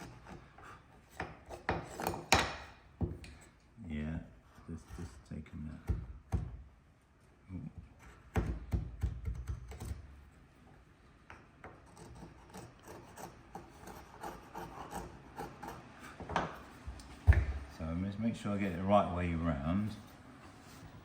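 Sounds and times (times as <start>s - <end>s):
hand tool scraping on wood: 0.0s - 2.4s, 11.7s - 16.8s
knocks on wood: 17.3s - 17.7s.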